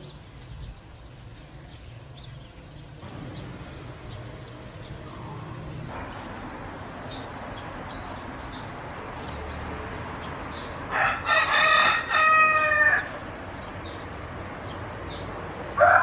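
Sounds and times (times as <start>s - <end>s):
rooster crowing: 10.9s - 13.2s, 15.8s - 16.0s.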